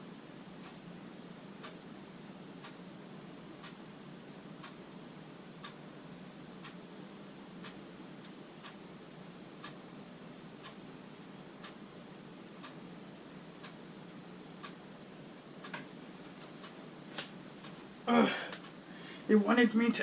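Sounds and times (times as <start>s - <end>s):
steady low hum: 0.0s - 20.0s
clock ticking: 1.6s - 1.8s, 2.6s - 2.9s, 3.6s - 3.8s, 4.6s - 4.9s, 5.6s - 5.8s, 6.6s - 6.8s, 7.6s - 7.8s, 9.6s - 9.8s, 10.6s - 10.9s, 11.6s - 11.8s, 12.6s - 12.8s, 13.6s - 13.9s, 14.6s - 14.8s.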